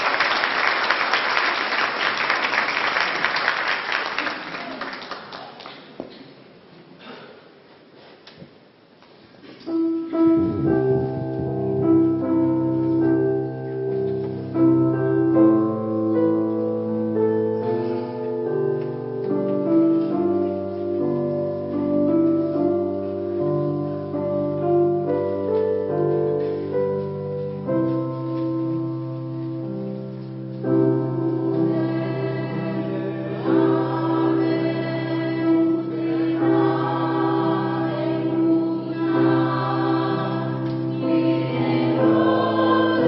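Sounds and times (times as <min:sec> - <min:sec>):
piano playing: 0:09.7 - 0:43.0.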